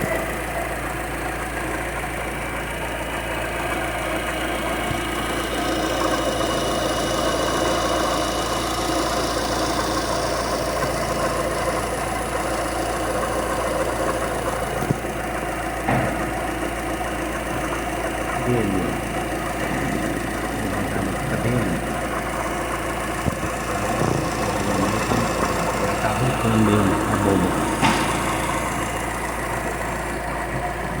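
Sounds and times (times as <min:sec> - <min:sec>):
car engine idling: 0:00.0 - 0:31.0
water pump growl: 0:18.2 - 0:31.0.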